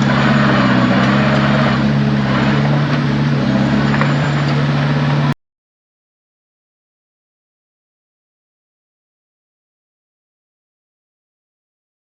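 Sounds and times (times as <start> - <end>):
heavy diesel engine running: 0.0 - 5.4.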